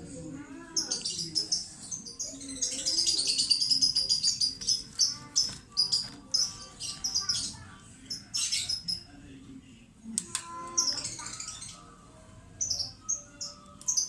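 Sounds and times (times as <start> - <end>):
lovebird chirping: 0.8 - 9.1, 12.6 - 14.0.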